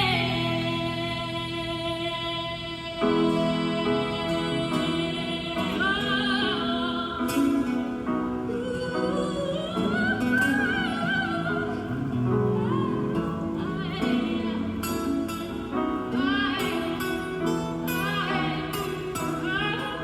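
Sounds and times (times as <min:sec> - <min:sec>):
person singing with vibrato: 0:00.0 - 0:20.0.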